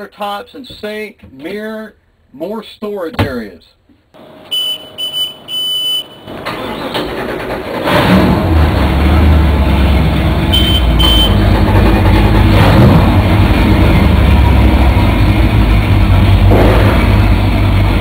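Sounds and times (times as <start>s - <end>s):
boat engines humming: 4.2s - 7.8s, 8.8s - 12.5s
short high electronic beeps: 4.5s - 6.2s, 10.6s - 11.4s.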